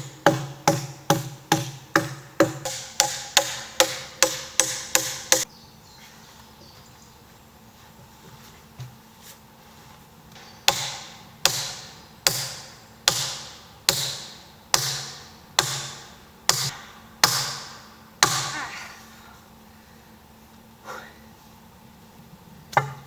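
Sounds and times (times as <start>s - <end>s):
heavy blows on wood: 0.0s - 5.4s.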